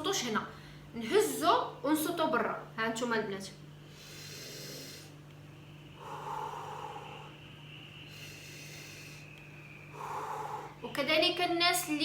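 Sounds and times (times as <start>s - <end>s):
faint steady hum: 0.0s - 12.0s
person breathing deeply: 3.8s - 5.2s, 5.9s - 10.8s.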